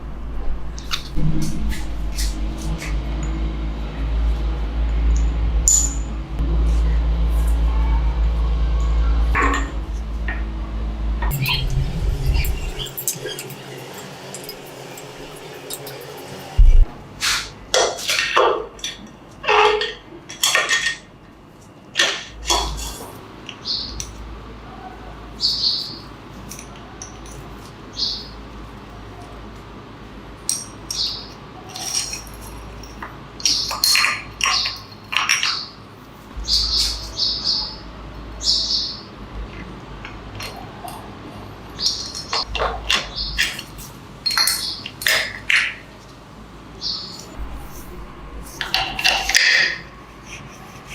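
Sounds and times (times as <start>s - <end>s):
metal tools clinking: 4.9s - 6.1s, 30.5s - 35.6s, 43.4s - 45.4s.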